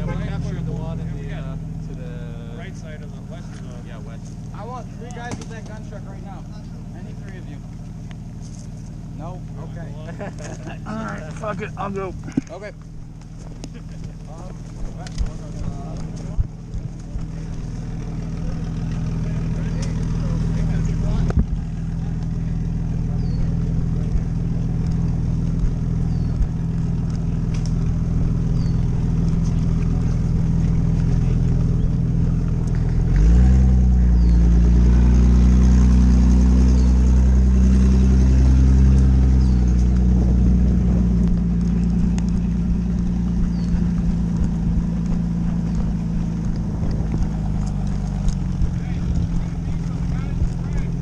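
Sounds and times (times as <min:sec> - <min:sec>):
truck engine running and revving: 0:00.0 - 0:51.0.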